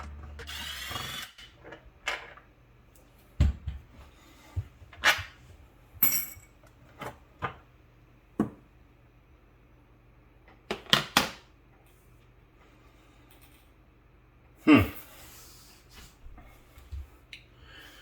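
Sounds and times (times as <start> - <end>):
background music: 0.0 - 0.6.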